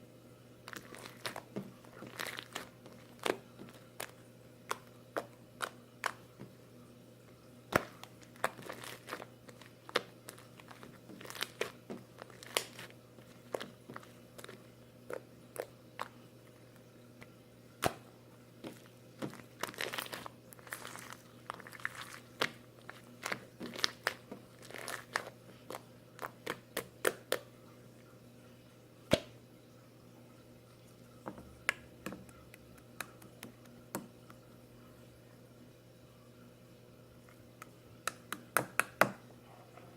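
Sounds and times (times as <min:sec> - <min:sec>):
crinkly crackling: 0:00.6 - 0:06.4, 0:07.3 - 0:17.4, 0:18.6 - 0:27.4.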